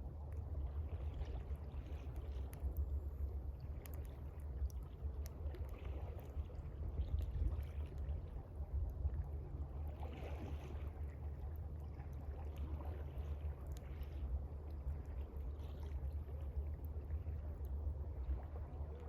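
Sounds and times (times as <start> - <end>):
steady low rumble: 0.0 - 19.0
water lapping: 0.1 - 19.0
campfire crackling: 2.0 - 5.7.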